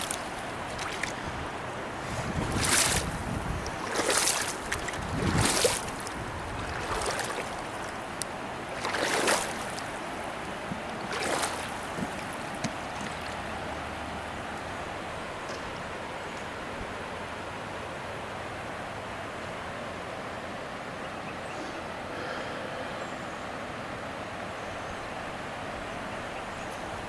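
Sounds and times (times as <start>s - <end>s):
water splashes: 0.0s - 17.4s
shallow river water rushing: 0.0s - 27.0s.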